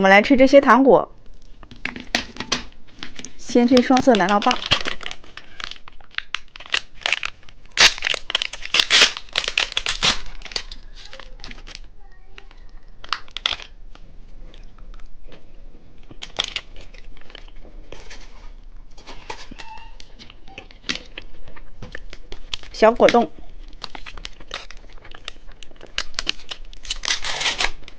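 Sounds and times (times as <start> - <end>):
plastic wrapper crinkling: 1.2 - 15.4, 16.0 - 27.9.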